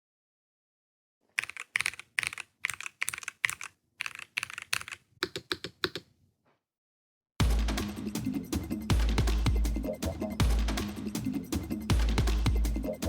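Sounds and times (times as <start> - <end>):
mechanical keyboard clacking: 1.4 - 6.1.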